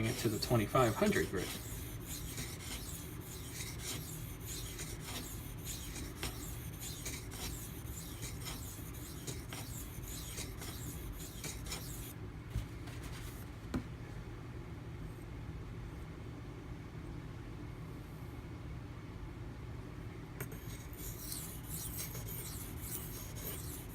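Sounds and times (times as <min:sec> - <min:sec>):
knife scraping on sharpening stone: 0:00.2 - 0:12.1.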